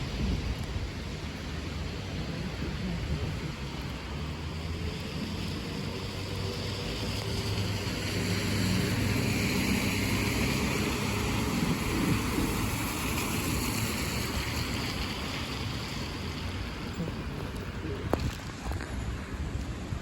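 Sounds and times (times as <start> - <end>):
tyres hissing on wet road: 0.0 - 20.0
vehicle engine hum: 0.0 - 20.0.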